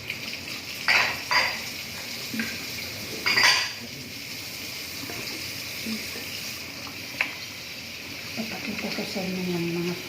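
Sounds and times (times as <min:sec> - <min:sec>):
dishes and cutlery clinking: 0:00.9 - 0:02.6, 0:03.2 - 0:03.8.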